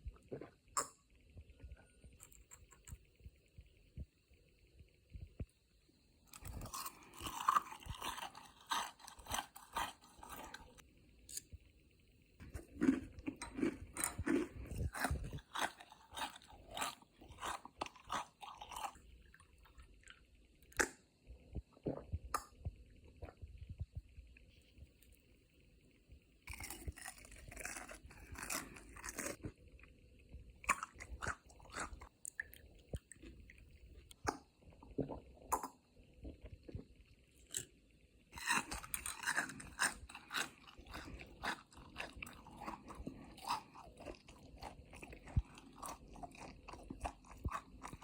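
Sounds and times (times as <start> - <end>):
crunchy chewing of fried chicken: 6.3 - 11.5, 12.4 - 21.0, 26.5 - 29.6, 30.6 - 34.4, 38.4 - 48.0.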